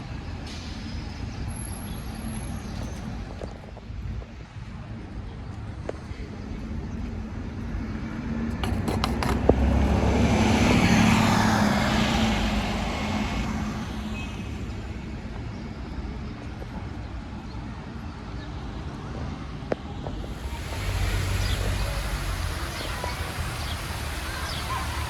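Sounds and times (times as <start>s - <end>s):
vehicle passing: 8.7s - 15.1s, 20.2s - 25.0s.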